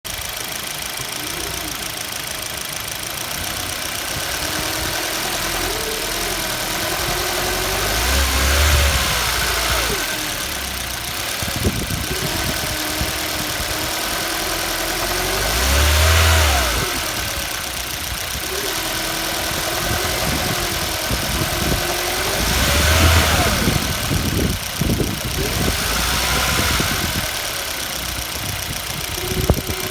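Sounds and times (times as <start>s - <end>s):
car engine running: 0.0s - 29.9s.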